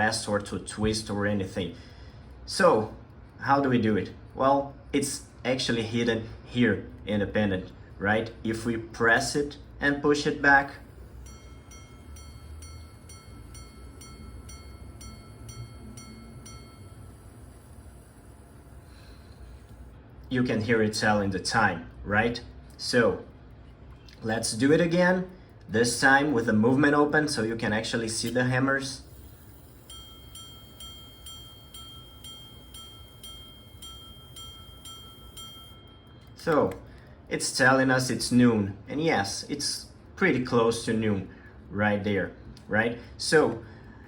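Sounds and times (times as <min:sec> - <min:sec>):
faint mechanical whine: 0:00.0 - 0:44.0
pocket watch chime strikes: 0:10.7 - 0:19.8, 0:28.2 - 0:36.8.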